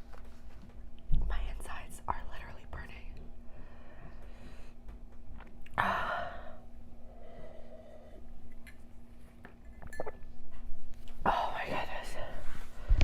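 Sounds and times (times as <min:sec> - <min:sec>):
woman breathing heavily: 0:03.4 - 0:04.9, 0:05.8 - 0:08.3, 0:11.3 - 0:13.0.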